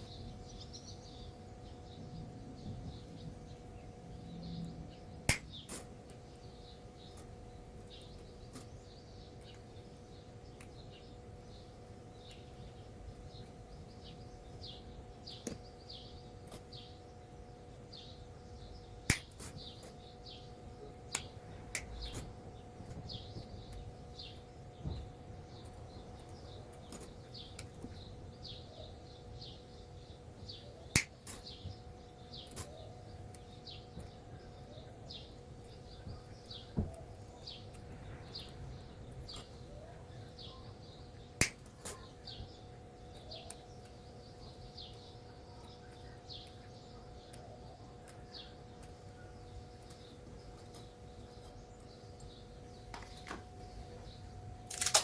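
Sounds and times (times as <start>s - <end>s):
faint steady hum: 0.0s - 55.0s.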